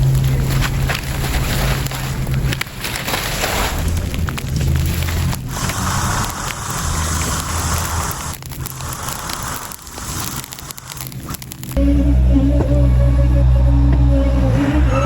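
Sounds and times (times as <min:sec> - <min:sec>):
crackling rustling noise: 0:00.0 - 0:11.8
sharp clicks and snaps: 0:03.8 - 0:11.8.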